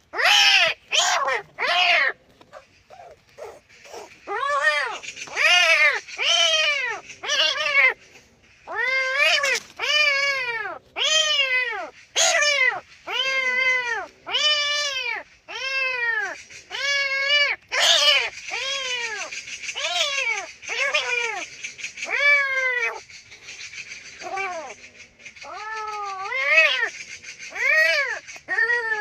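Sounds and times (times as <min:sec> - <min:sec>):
kitten meowing: 0:00.2 - 0:08.0.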